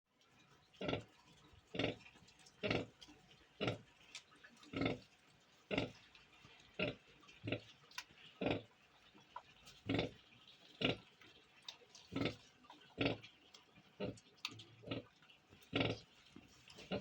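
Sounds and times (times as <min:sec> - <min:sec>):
pig grunting: 0:12.1 - 0:13.3, 0:14.8 - 0:16.1.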